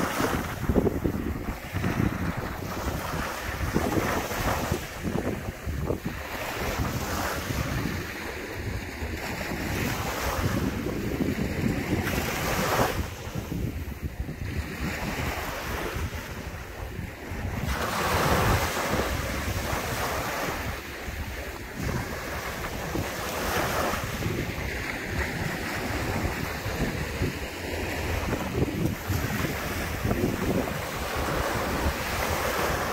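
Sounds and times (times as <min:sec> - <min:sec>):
ocean waves washing up: 0:00.0 - 0:32.9.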